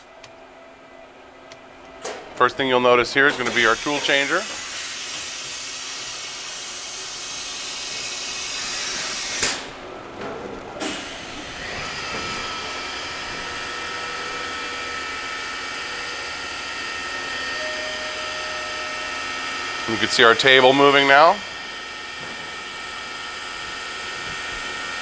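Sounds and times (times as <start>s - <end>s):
spindle whine: 1.0s - 25.0s
tool changer clunks: 1.8s - 2.5s, 3.2s - 5.3s
air hissing: 3.1s - 9.8s.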